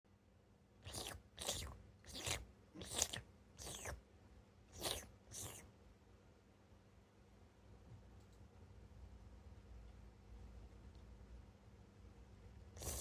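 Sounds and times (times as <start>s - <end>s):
cat licking fur: 0.9s - 4.0s, 4.7s - 5.7s, 12.8s - 13.0s.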